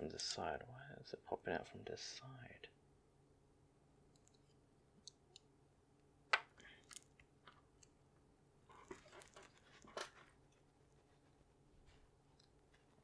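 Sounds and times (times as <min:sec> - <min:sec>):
small clicks from handling parts: 0:04.1 - 0:05.5, 0:06.3 - 0:08.0, 0:12.4 - 0:12.6
scraping rustles: 0:08.7 - 0:12.1.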